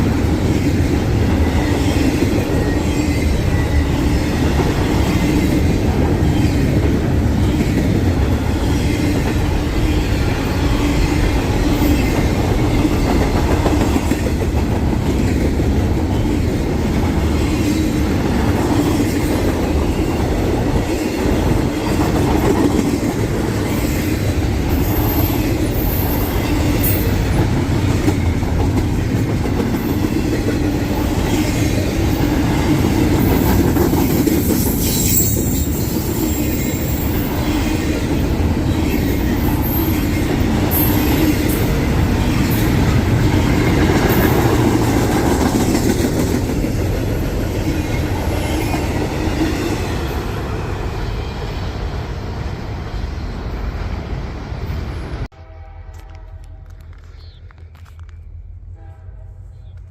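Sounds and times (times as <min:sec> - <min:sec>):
train cars rolling on steel wheels: 0:00.0 - 0:55.0
high wheel squeal: 0:34.5 - 0:38.0.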